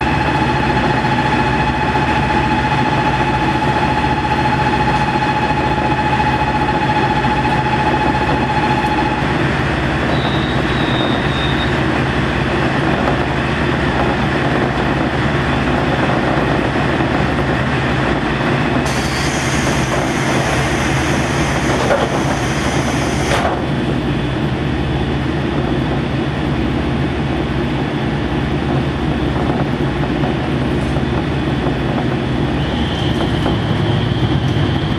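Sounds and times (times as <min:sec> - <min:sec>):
diesel engine running: 0:00.0 - 0:34.9
hiss: 0:18.9 - 0:23.4.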